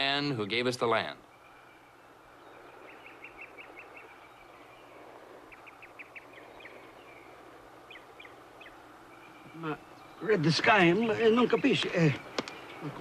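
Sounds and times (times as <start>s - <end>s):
faint steady hiss: 0.0s - 13.0s.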